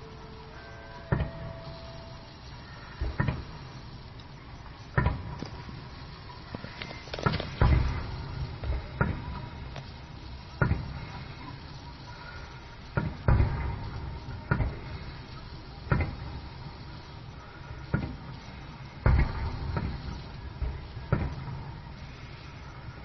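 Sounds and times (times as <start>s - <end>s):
fireworks booming: 0.0s - 23.0s.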